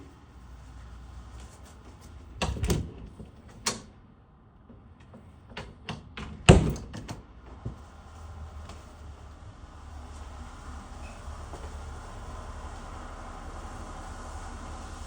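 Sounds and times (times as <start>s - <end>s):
knocks clicks and clunks: 1.8s - 4.0s, 4.6s - 7.8s.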